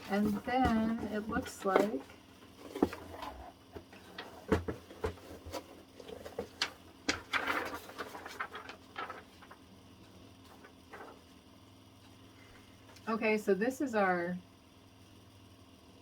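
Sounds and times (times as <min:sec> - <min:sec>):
paper rustling: 0:00.0 - 0:03.4, 0:04.0 - 0:09.6, 0:10.4 - 0:11.3.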